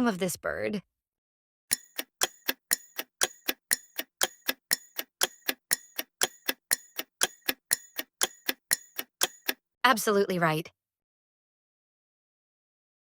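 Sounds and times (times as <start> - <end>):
clock ticking: 1.7 - 9.6.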